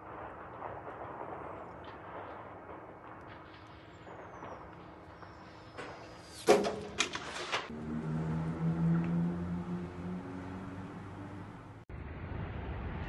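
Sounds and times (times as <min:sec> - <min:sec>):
loud sharp bangs: 0:00.0 - 0:07.3.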